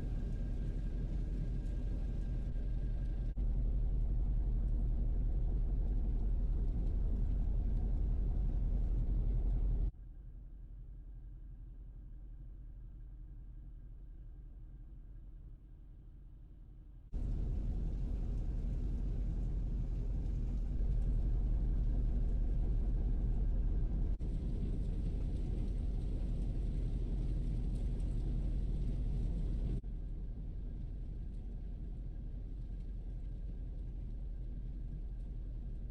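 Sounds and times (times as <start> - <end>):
low vehicle rumble: 17.2 - 35.9.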